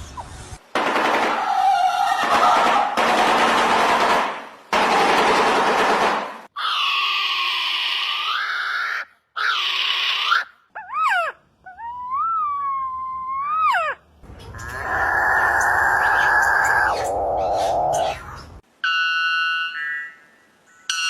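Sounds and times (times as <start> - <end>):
bird calls: 11.9 - 18.6.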